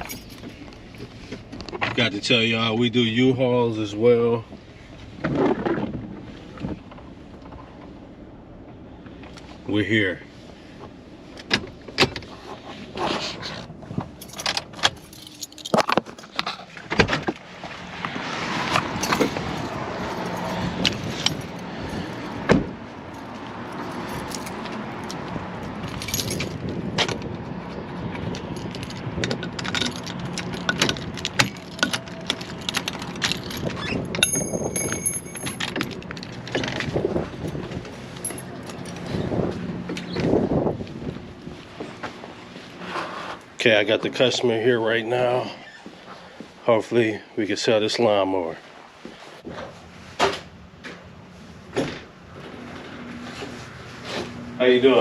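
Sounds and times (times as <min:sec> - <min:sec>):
keys jangling: 0:00.0 - 0:00.7, 0:14.2 - 0:16.4, 0:23.2 - 0:26.6, 0:28.4 - 0:36.4, 0:37.9 - 0:39.1.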